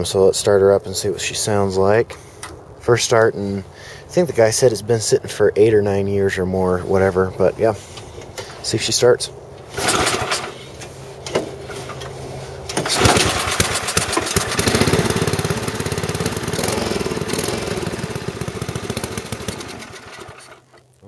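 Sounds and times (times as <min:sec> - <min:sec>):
small gasoline engine running: 0:09.7 - 0:10.7, 0:12.7 - 0:20.8.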